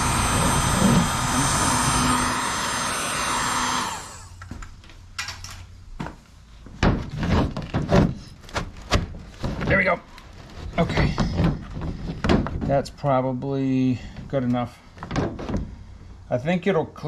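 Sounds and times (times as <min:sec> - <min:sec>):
heat gun fan blowing: 0:00.0 - 0:04.5.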